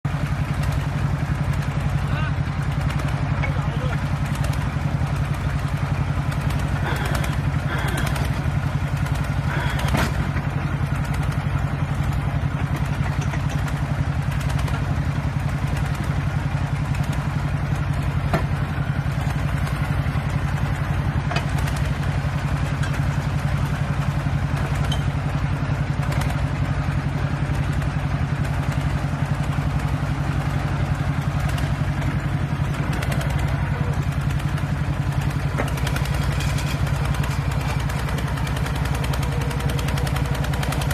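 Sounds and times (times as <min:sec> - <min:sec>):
tractor engine running: 0:00.0 - 0:40.9
metallic knocks from drilling rig: 0:12.6 - 0:13.8, 0:24.7 - 0:25.2, 0:35.4 - 0:38.0.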